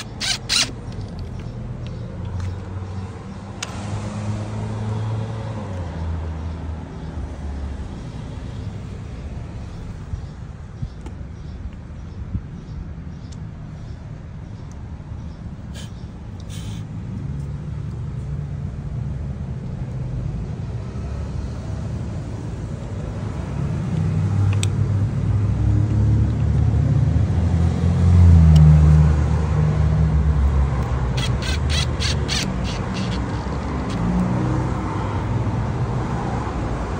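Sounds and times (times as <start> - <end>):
quick run of clicks: 0.0 - 2.7, 30.8 - 34.3
motor vehicle rumble: 0.0 - 36.9.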